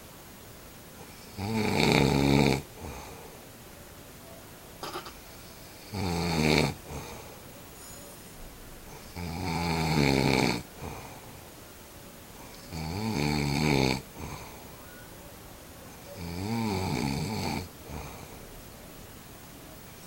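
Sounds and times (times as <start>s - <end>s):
person snoring: 1.0s - 3.2s, 5.8s - 7.3s, 8.9s - 11.3s, 12.5s - 14.6s, 16.2s - 18.4s.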